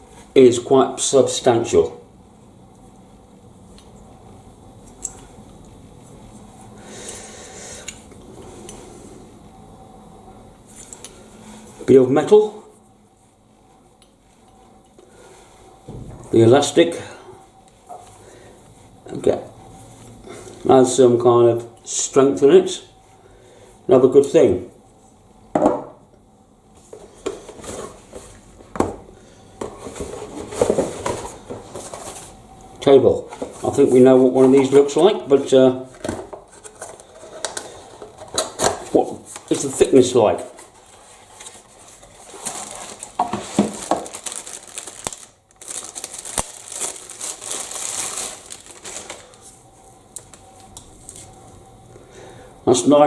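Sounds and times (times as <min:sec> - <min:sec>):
rustling: 0:40.4 - 0:51.4.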